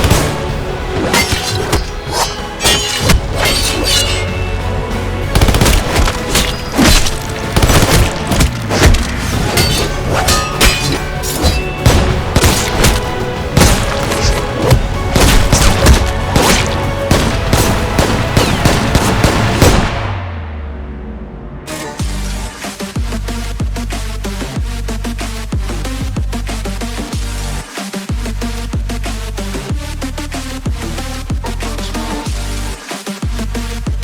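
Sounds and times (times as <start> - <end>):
music with low bass: 0.0 - 34.0
gunfire-like shots: 5.4 - 20.2
action sound effects hits and booms: 11.7 - 22.2.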